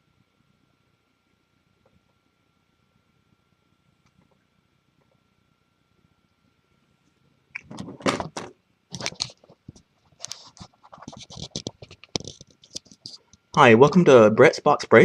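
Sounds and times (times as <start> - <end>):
scraping and clicking of objects: 7.6 - 13.4.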